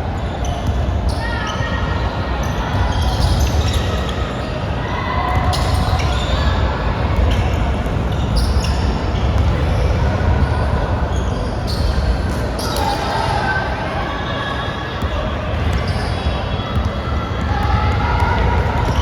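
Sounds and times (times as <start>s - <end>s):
short shoe squeaks: 2.9s - 4.5s, 7.3s - 9.0s
basketball bouncing on court: 7.0s - 10.6s, 15.0s - 19.0s.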